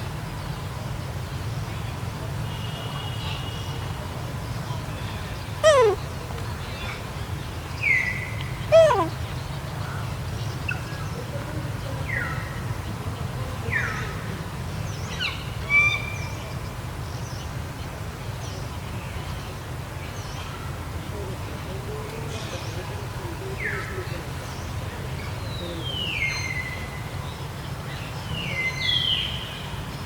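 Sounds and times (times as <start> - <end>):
high animal calls sliding down: 5.6 - 6.0.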